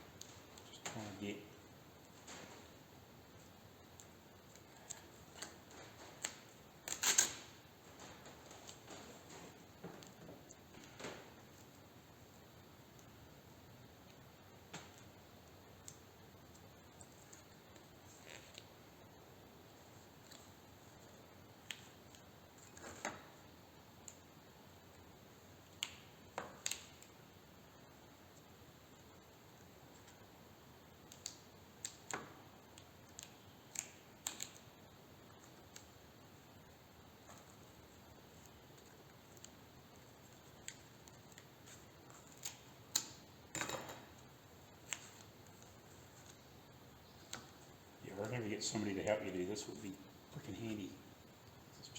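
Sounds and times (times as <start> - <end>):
duct tape clicks and crackles: 3.9 - 11.8, 25.6 - 27.2, 29.1 - 36.0, 37.2 - 47.6
tape pulling off the roll: 5.3 - 9.4
faint hiss: 44.7 - 51.9.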